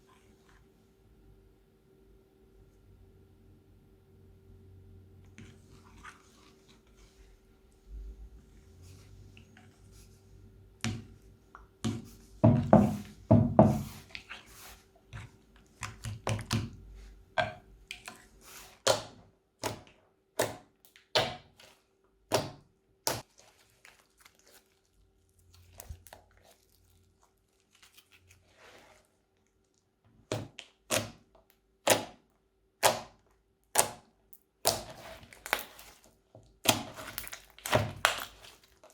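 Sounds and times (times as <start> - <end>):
slime squishing and popping: 36.6 - 38.9.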